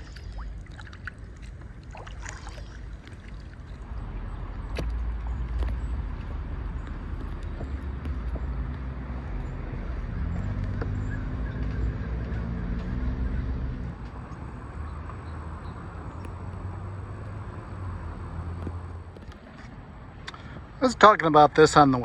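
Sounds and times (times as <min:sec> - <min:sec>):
vehicle engine droning: 0:03.7 - 0:20.6.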